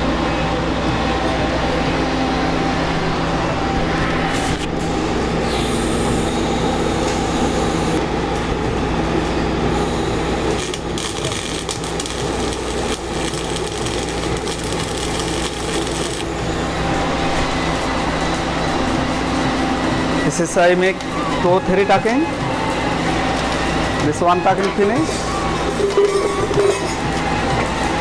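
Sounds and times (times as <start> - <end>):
welding machine hum: 1.8 - 28.0
welding arc crackling: 4.4 - 20.3.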